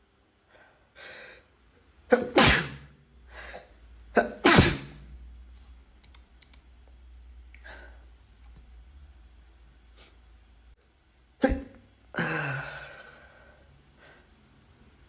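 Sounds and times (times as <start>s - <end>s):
person sneezing: 2.1s - 5.0s, 11.4s - 13.3s.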